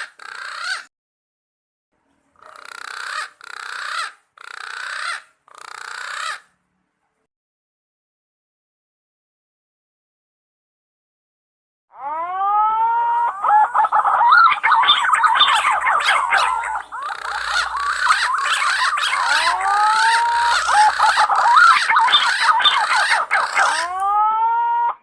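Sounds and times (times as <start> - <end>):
pigeons whistling calls: 12.8 - 25.0.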